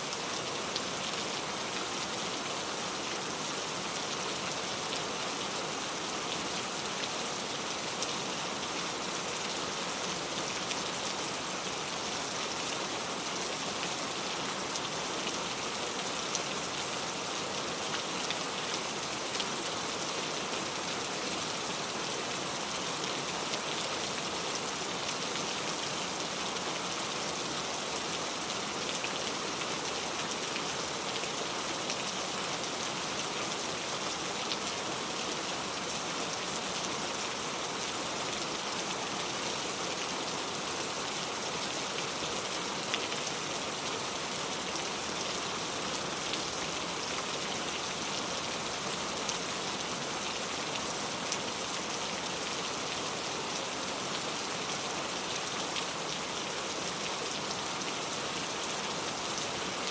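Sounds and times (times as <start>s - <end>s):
rain pattering on a surface: 0.1s - 59.9s.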